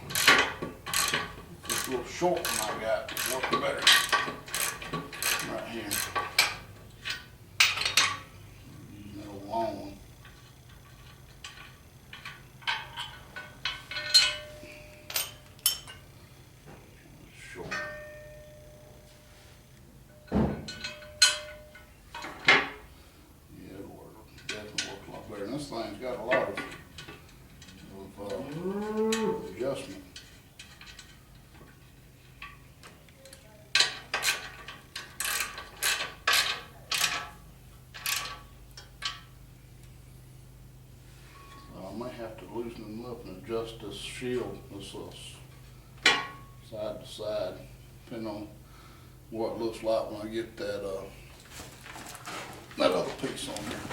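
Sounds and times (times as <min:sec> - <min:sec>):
ratchet wrench ratcheting: 0:00.1 - 0:08.2
metal bolts clinking: 0:00.1 - 0:08.3, 0:10.0 - 0:16.5, 0:17.6 - 0:18.6, 0:20.1 - 0:22.8.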